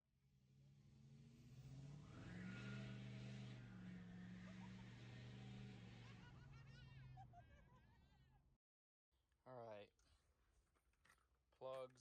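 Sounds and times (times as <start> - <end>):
faint car engine hum: 0.5 - 8.5.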